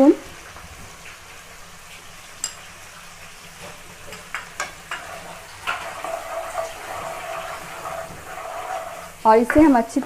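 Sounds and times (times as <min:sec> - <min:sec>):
paste frying in butter: 0:00.0 - 0:10.0
spoon stirring and scraping pan: 0:03.5 - 0:09.7
spoon knocking on pan: 0:03.7 - 0:06.8.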